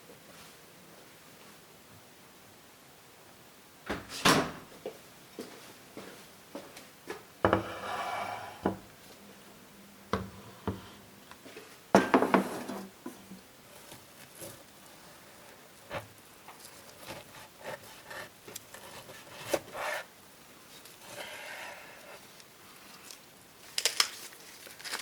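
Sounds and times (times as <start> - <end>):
cookware and utensils clattering: 12.0 - 13.2.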